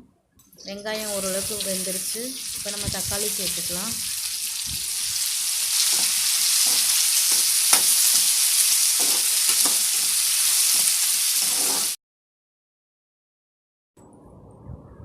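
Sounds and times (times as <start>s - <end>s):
onions and tomatoes sizzling in oil: 0.7s - 12.0s
spatula scraping and knocking pan: 5.7s - 12.0s.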